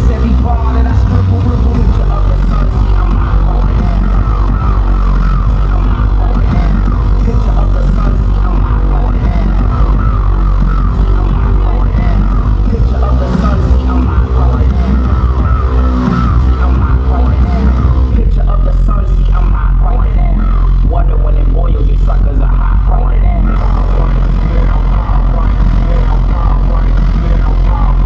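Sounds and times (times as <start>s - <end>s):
busy synth line: 0.0s - 28.0s
heavy sub-bass notes: 0.0s - 28.0s.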